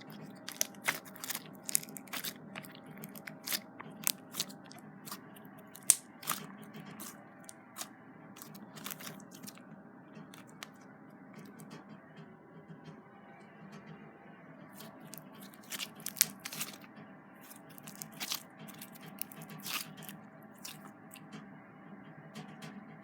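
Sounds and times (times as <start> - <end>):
slime kneaded by hand: 0.0 - 9.6, 10.3 - 10.8, 14.8 - 20.9.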